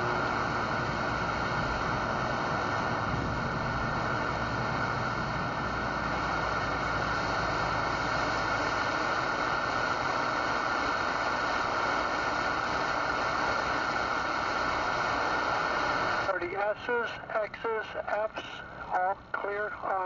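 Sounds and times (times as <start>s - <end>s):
low hum: 0.0s - 19.9s
radio speaker hiss: 9.9s - 20.0s.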